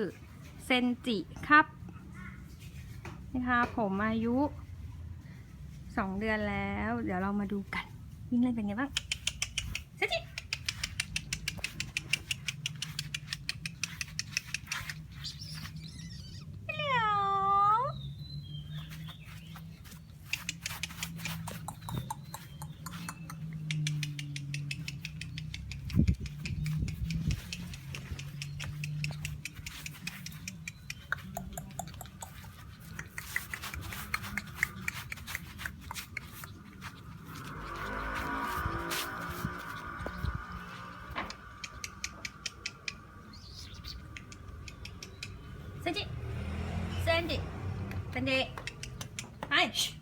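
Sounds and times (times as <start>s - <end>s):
puppy claws clicking on hard floor: 9.0s - 15.8s, 19.8s - 45.5s, 48.6s - 49.5s
high puppy whine: 10.6s - 18.0s.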